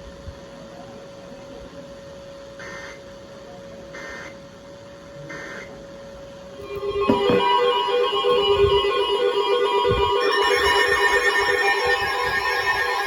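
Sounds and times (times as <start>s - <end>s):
faint steady hum: 0.0s - 13.0s
buzzy digital chirps: 6.6s - 13.0s.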